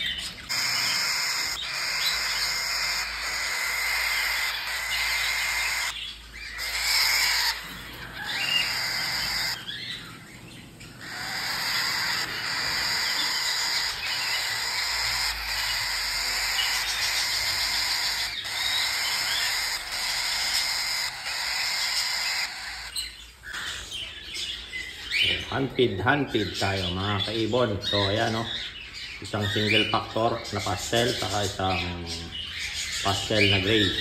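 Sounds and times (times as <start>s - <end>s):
cockatiel chicks chirping: 0.0s - 34.0s.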